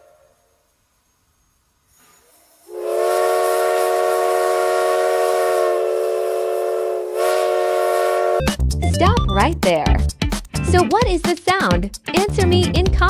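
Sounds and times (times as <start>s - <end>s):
steam locomotive whistle: 0.0s - 0.6s, 2.7s - 8.5s
hiss of steam: 1.8s - 8.3s.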